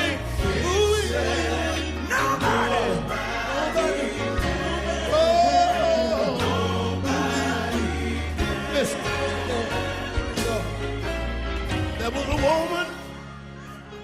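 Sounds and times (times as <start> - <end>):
man singing gospel: 0.0 - 11.2
choir singing: 0.0 - 11.4.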